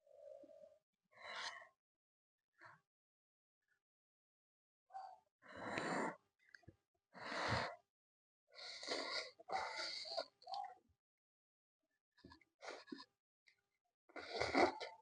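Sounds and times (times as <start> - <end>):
noodles being slurped: 14.2 - 15.0.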